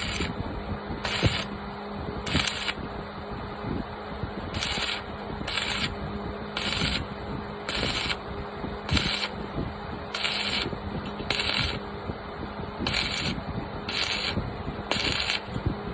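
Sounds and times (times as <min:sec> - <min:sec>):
welding arc crackling: 0:00.0 - 0:00.4, 0:01.0 - 0:01.5, 0:02.3 - 0:02.8, 0:04.5 - 0:07.1, 0:07.7 - 0:08.3, 0:08.9 - 0:09.4, 0:10.1 - 0:11.9, 0:12.8 - 0:15.6
electrical hum: 0:00.0 - 0:15.9.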